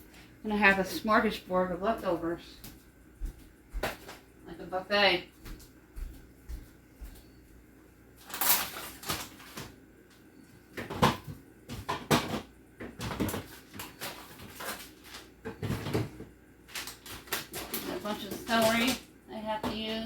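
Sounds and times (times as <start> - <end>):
food containers knocking and clattering: 3.2 - 4.2, 10.7 - 19.0, 19.6 - 20.0.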